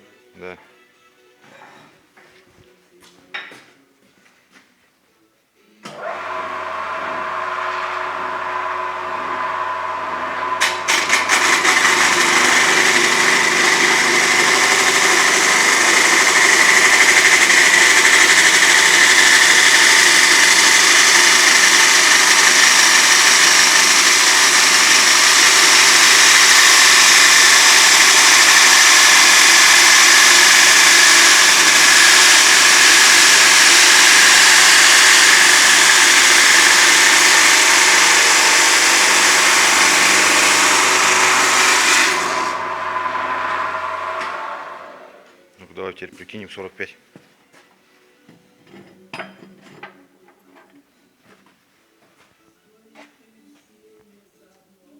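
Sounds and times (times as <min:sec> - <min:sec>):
cut-off saw cutting: 0:05.9 - 0:45.3.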